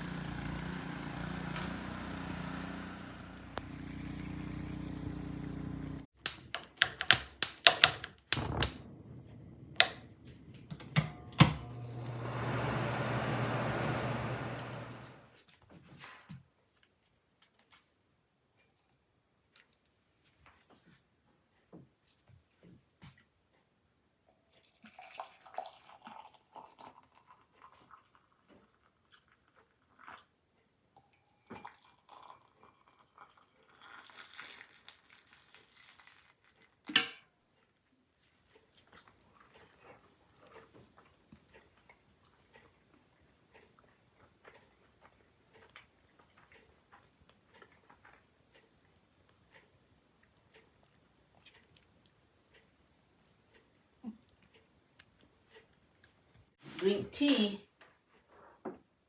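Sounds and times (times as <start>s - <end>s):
dishes and utensils knocking: 6.3s - 8.8s
soft chewing: 16.8s - 36.9s, 37.5s - 56.5s, 57.8s - 58.6s.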